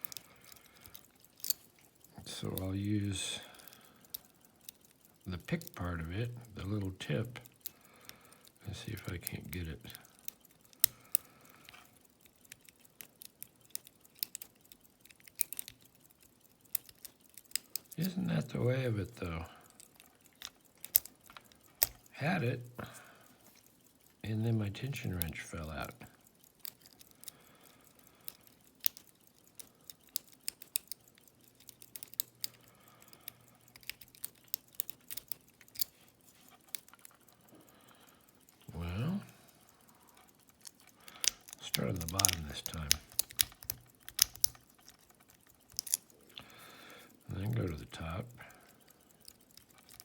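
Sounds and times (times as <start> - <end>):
lock pick clicking and scratching: 0.0 - 50.0.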